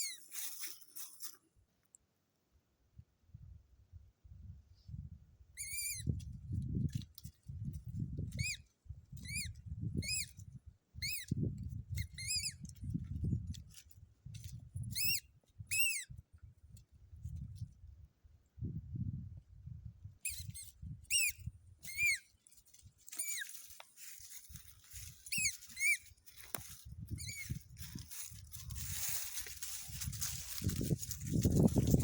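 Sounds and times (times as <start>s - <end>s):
squeaky dog toy squeaking: 5.6s - 6.2s, 9.2s - 10.4s, 11.0s - 11.4s, 12.0s - 12.6s, 14.9s - 16.1s, 20.3s - 22.3s, 23.1s - 23.7s, 25.2s - 26.1s, 27.1s - 27.6s
muffled thumping and rustling chewing: 22.5s - 32.0s.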